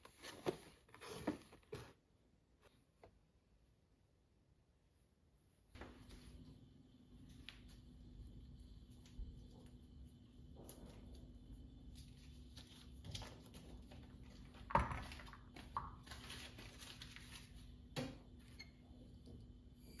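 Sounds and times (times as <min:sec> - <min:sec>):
objects knocking and clattering: 0:13.1 - 0:16.3.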